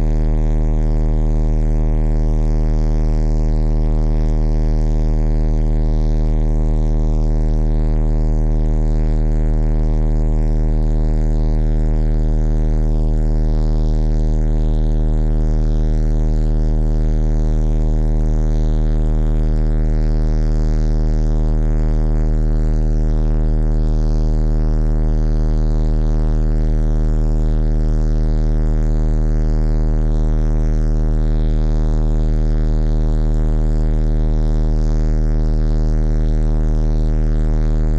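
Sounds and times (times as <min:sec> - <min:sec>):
low-pitched electronic buzz: 0:00.0 - 0:37.9.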